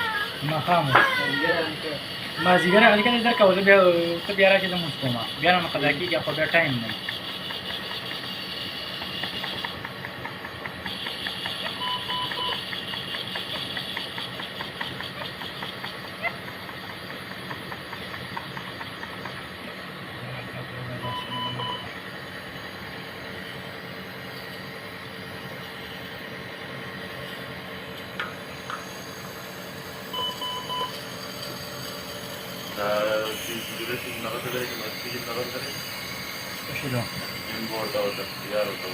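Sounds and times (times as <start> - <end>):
hiss and hum of equipment: 0.0 - 38.9
rapid even ticking: 2.0 - 19.6
broken electronic beep: 11.7 - 12.6, 21.0 - 21.9, 30.1 - 31.0.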